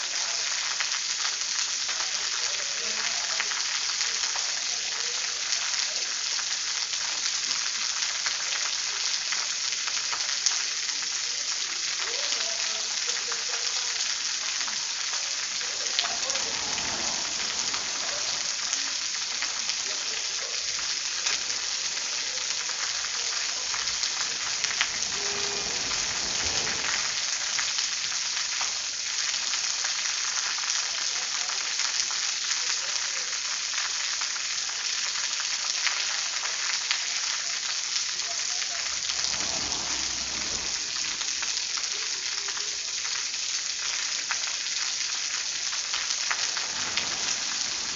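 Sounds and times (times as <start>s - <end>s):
steady rain falling: 0.0s - 47.9s
faint low swell: 15.6s - 19.2s.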